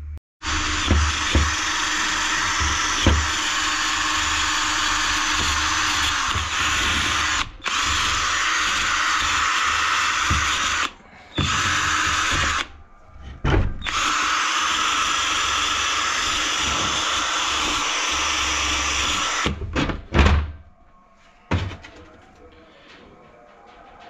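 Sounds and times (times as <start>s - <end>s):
handheld power tool grinding metal: 0.4s - 12.7s, 13.8s - 19.6s
knocks of handling: 21.5s - 24.0s.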